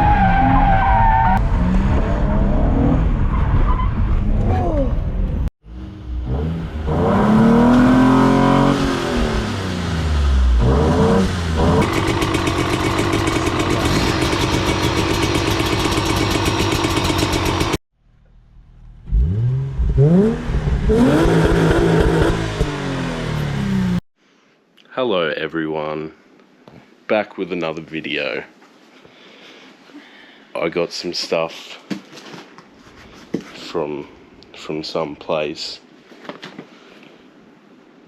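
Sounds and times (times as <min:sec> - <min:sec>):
car engine revving hard: 0:06.2 - 0:17.8, 0:19.1 - 0:24.0.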